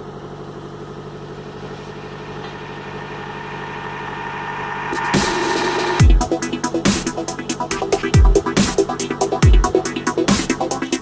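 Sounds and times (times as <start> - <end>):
droning synth: 1.8 - 10.3
rising hiss sweep: 2.0 - 7.5
electronic beat drop: 2.0 - 11.0.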